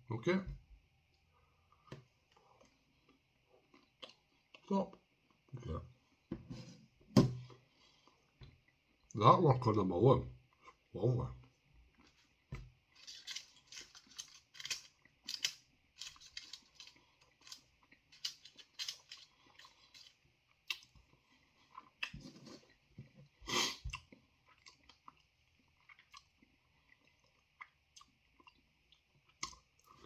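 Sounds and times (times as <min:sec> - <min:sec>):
person chewing chocolate: 0:01.7 - 0:05.5, 0:13.4 - 0:30.0.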